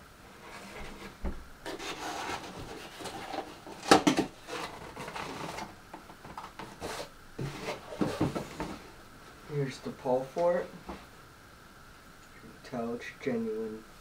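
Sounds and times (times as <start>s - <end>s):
packaging rustling: 1.6s - 8.5s.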